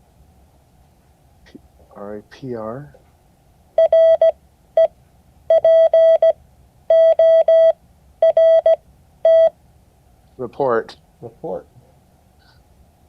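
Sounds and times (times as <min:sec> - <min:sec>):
morse code beeps: 0:03.8 - 0:04.9, 0:05.5 - 0:09.5.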